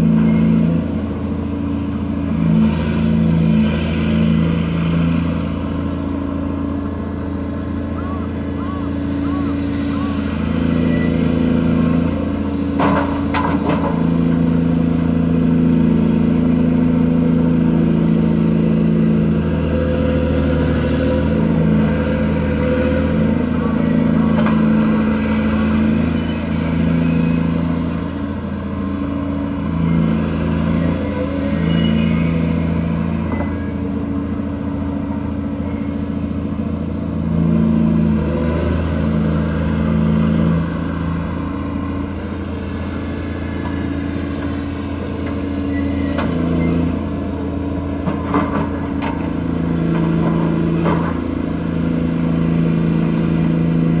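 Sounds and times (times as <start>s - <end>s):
diesel engine drone: 0.0s - 54.0s.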